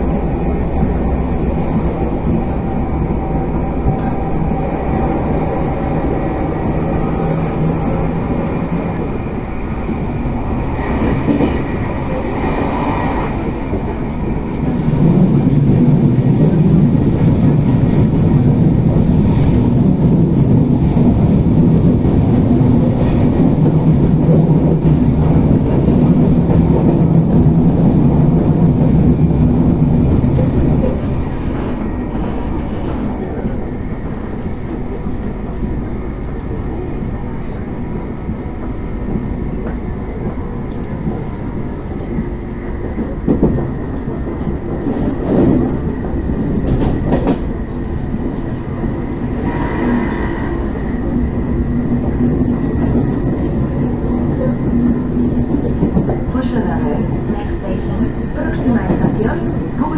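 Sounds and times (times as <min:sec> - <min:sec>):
train wheels rolling: 0:10.4 - 0:34.7, 0:40.7 - 0:59.9.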